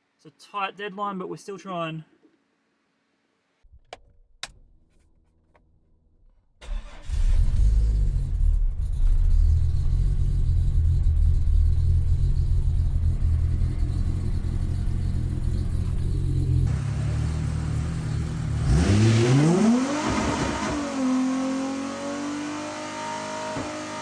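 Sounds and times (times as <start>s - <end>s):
car engine running hard: 7.5s - 24.0s.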